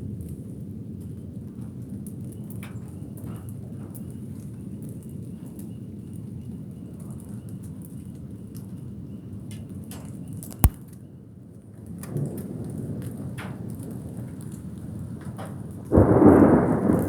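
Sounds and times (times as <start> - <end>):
sharp click: 10.6 - 10.8
low thunderstorm roar: 15.9 - 17.0.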